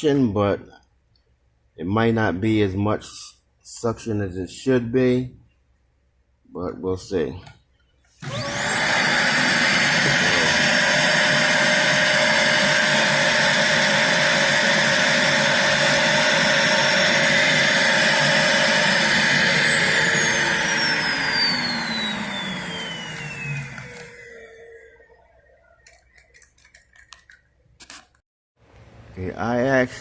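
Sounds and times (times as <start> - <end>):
vacuum cleaner motor whine: 8.2 - 25.8.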